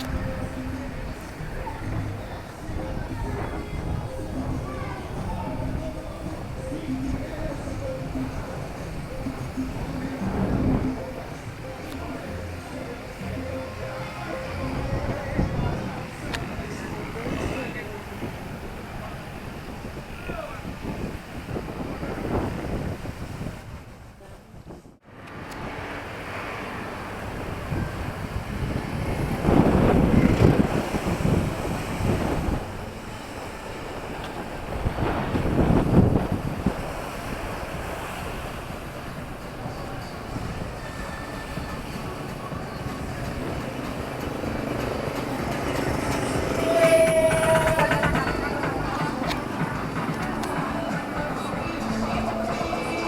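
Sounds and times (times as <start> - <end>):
steady traffic hum: 0.0 - 53.0
wind on microphone: 0.0 - 53.0
vehicles passing close: 25.0 - 53.0.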